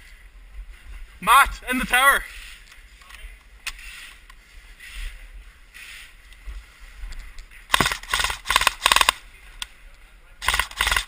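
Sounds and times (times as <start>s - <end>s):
airsoft rifle rapid bursts: 7.7s - 9.2s, 10.4s - 11.0s.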